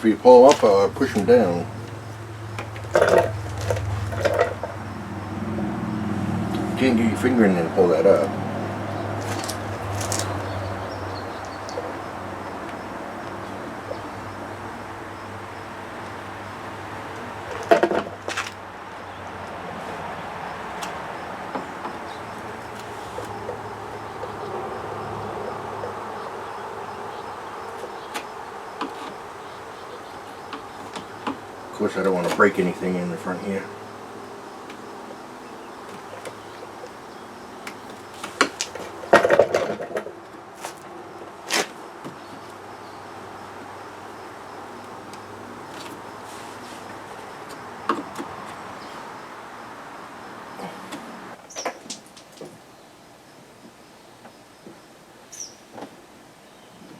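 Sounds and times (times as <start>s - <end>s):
rattling clatter: 0.4s - 5.0s
low hum: 0.6s - 17.2s.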